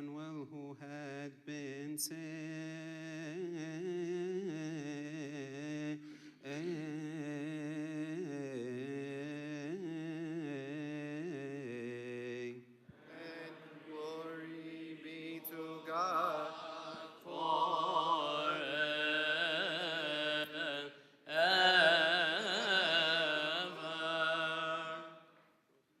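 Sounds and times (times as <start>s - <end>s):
voices chanting church melody: 12.9s - 25.3s.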